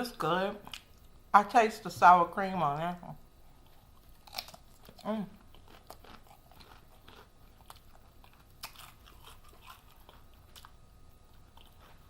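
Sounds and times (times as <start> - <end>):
person chewing with crunches: 3.4 - 12.0.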